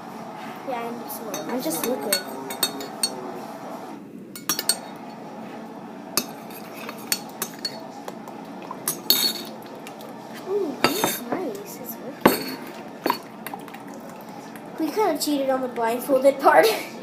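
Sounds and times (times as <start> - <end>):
utensil scraping a bowl: 6.2 - 7.8.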